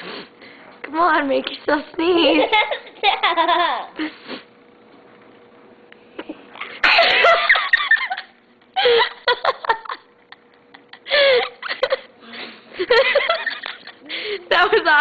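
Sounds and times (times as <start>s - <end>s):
girl giggling and laughing: 2.1s - 4.0s, 6.8s - 12.1s, 12.8s - 14.6s.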